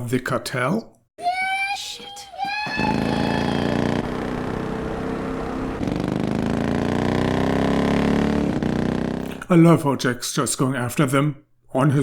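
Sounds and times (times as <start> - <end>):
vehicle engine accelerating: 2.8 - 9.4.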